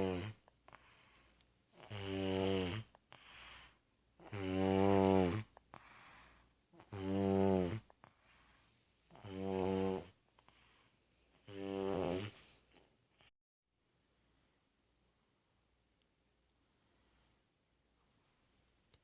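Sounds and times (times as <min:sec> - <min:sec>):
toddler snoring: 0:00.0 - 0:12.7
quiet breaths: 0:00.0 - 0:19.0.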